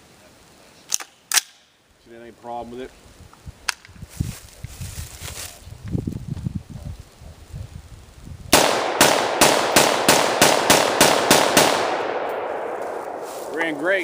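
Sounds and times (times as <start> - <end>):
rifle firing rapid shots: 8.5 - 12.5
gunshot echoes: 8.5 - 14.0.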